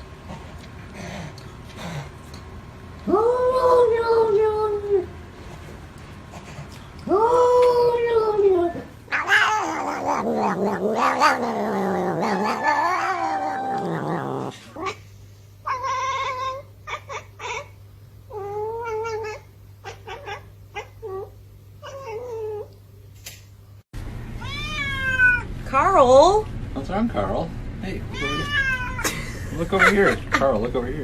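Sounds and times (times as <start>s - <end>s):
cat yowling: 7.1s - 15.0s, 15.6s - 17.7s, 18.3s - 22.7s, 24.4s - 25.5s, 28.1s - 29.1s
cat meowing: 9.1s - 15.0s, 24.4s - 25.5s, 28.1s - 29.1s.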